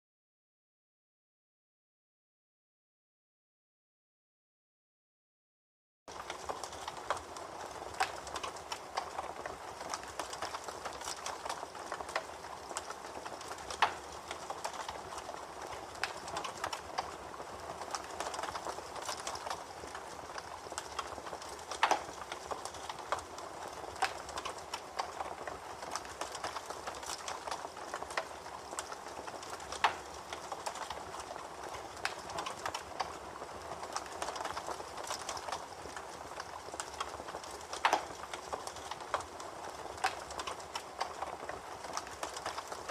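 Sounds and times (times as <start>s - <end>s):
burning wood popping: 6.1s - 42.9s
campfire crackling: 6.1s - 42.9s.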